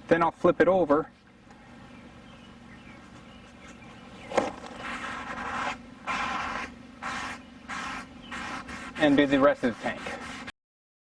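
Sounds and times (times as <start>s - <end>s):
spray can hissing: 4.8s - 10.5s.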